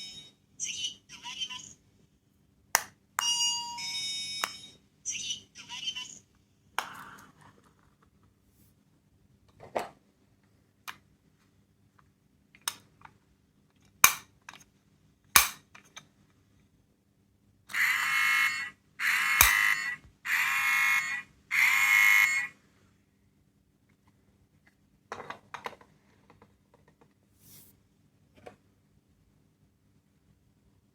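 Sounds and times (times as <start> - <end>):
toy clicks: 17.7 - 22.5.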